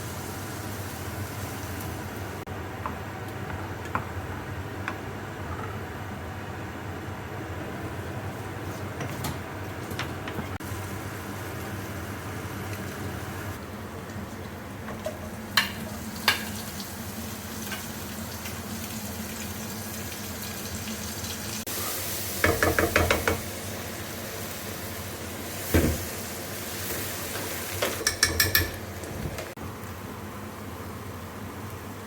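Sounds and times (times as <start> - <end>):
food sizzling in a pan: 0.0 - 2.4, 10.6 - 13.6, 15.5 - 29.1
utensils clinking: 27.9 - 28.9.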